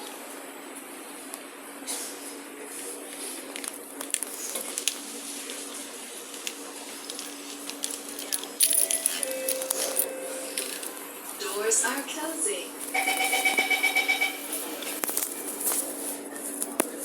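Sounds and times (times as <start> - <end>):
train low hum: 4.7 - 17.0
short tones: 12.9 - 14.6.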